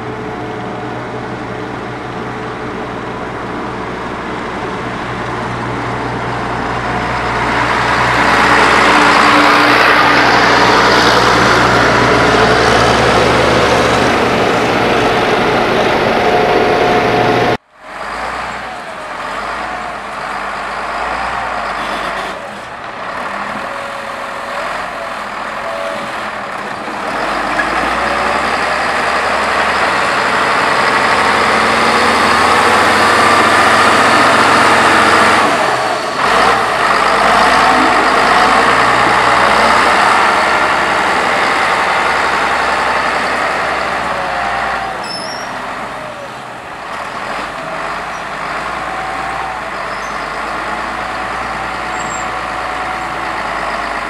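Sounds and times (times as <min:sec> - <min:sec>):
heavy machinery engine noise: 0:00.0 - 0:54.0
wavering high squeal: 0:45.0 - 0:45.6.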